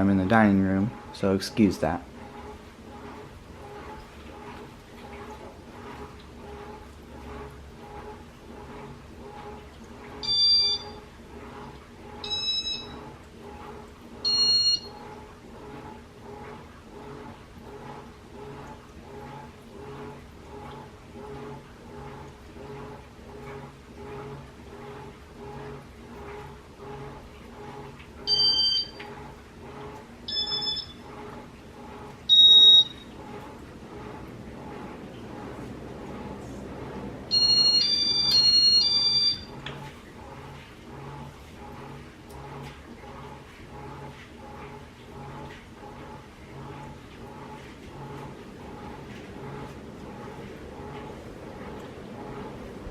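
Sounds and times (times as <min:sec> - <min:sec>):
faint background hum: 0:00.0 - 0:52.9
electronic beeps: 0:10.2 - 0:11.0, 0:30.3 - 0:31.0, 0:32.3 - 0:33.1, 0:37.3 - 0:39.5.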